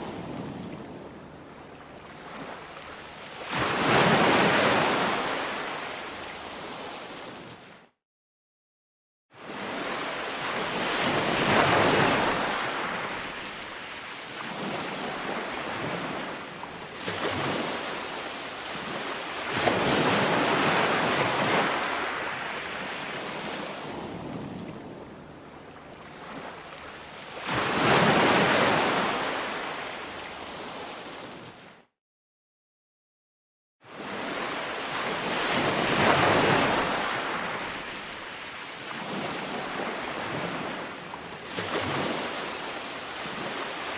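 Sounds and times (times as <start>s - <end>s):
ocean waves crashing: 2.1s - 7.2s, 9.5s - 16.4s, 17.1s - 25.0s, 26.0s - 31.4s, 34.0s - 43.9s.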